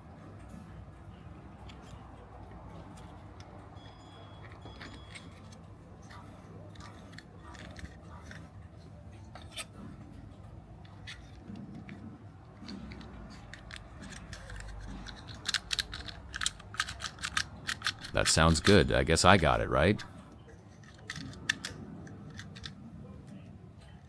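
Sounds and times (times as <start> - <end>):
faint low hum: 0.0 - 24.0
plastic parts clicking: 4.4 - 9.8, 10.8 - 19.0, 20.7 - 22.8.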